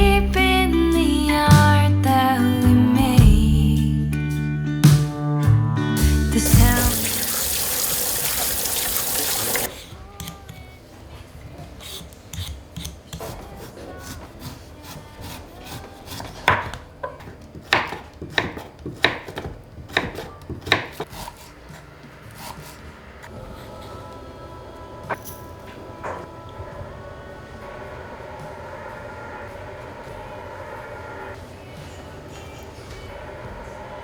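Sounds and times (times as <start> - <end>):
kitchen tap running: 6.5 - 9.7.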